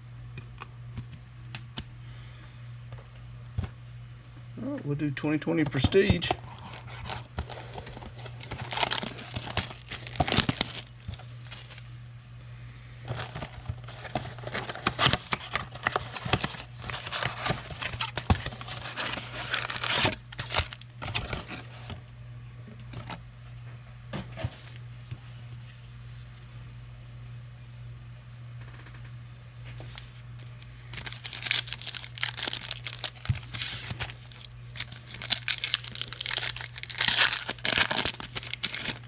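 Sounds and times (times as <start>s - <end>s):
steady low hum: 0.0s - 39.0s
foil wrappers tearing and crinkling: 6.6s - 11.9s, 13.1s - 21.6s, 29.9s - 39.0s.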